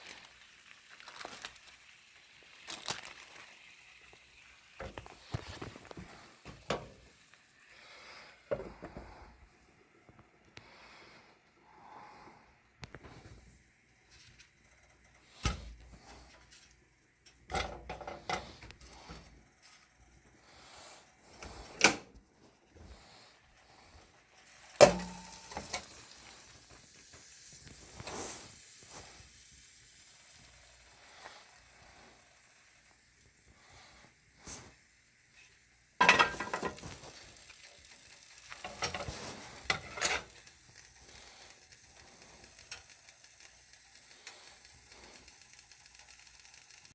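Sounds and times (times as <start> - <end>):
faint frying sizzle: 0.0 - 46.9
utensils clinking on pans: 4.8 - 7.2, 24.5 - 26.2, 36.0 - 37.6, 38.4 - 40.5.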